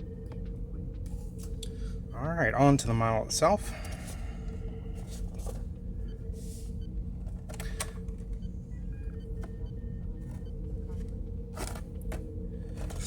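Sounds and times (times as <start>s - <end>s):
steady low hum: 0.0s - 13.0s
packaging clicks: 9.2s - 13.0s.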